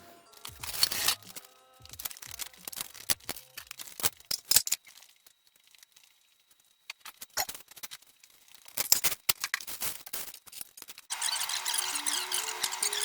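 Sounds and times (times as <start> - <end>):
background music: 0.0 - 3.7.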